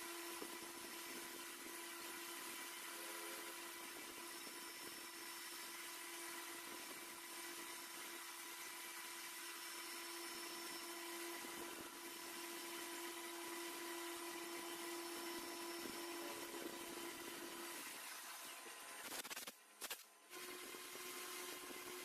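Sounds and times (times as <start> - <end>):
machine tool humming and whining: 0.0 - 22.0.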